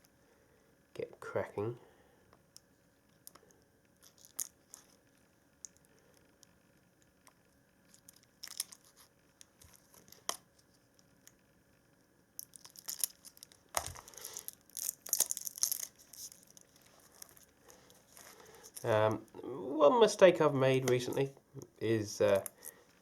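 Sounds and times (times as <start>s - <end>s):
plastic wrapping crinkling and tearing: 4.0s - 5.0s, 7.9s - 11.0s, 12.4s - 19.0s.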